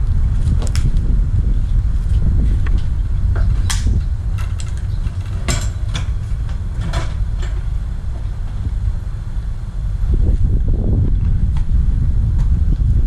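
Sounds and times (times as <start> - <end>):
wind rumbling on microphone: 0.0 - 13.0
sharp clicks and knocks: 2.6 - 8.3.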